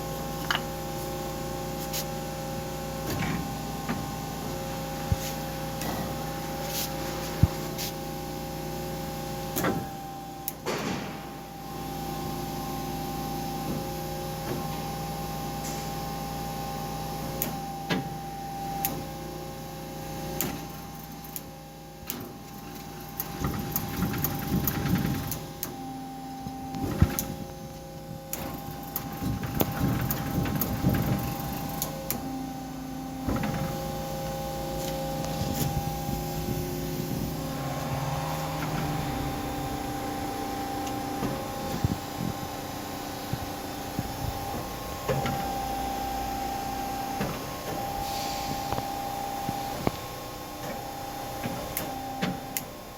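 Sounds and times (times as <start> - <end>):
loud mechanical noise: 0.0 - 52.9
band saw machine hum: 31.4 - 49.2.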